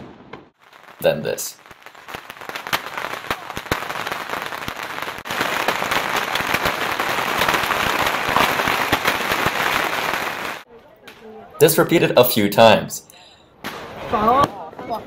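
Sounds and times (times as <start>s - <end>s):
fireworks popping and crackling: 0.0s - 11.2s.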